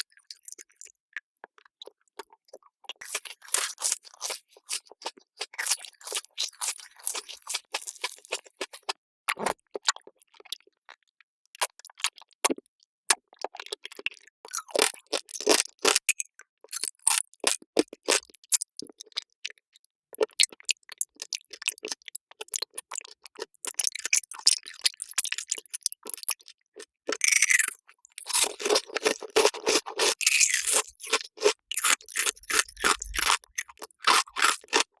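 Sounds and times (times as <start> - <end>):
crisp crunching and chewing: 1.6 - 10.8, 21.2 - 35.0.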